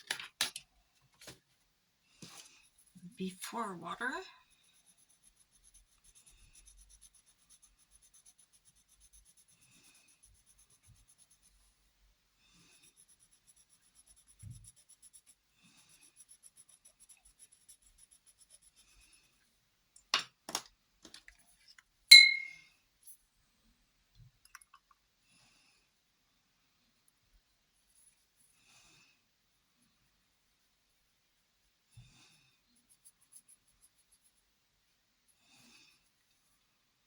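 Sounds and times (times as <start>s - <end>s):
pencil scratching on paper: 2.2s - 3.1s, 4.0s - 19.5s, 31.9s - 34.6s
ringing clink of hard object: 22.1s - 22.6s.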